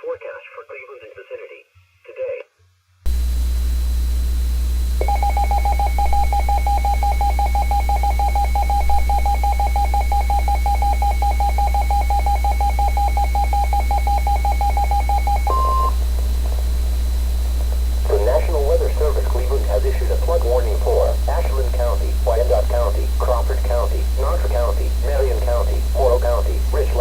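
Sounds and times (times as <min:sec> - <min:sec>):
loud steady hum: 0:03.1 - 0:27.0
steady higher beep: 0:05.0 - 0:16.0, 0:18.0 - 0:27.0
rapidly pulsing beep: 0:05.0 - 0:27.0.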